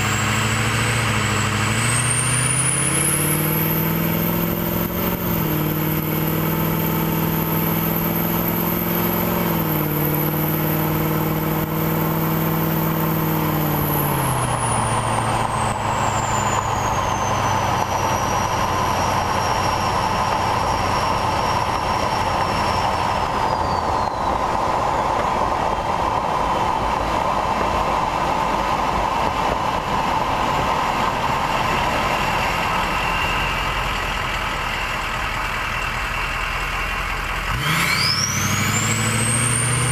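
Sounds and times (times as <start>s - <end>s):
diesel engine revving and idling: 0.0s - 39.9s
turbo whistling: 13.9s - 25.2s.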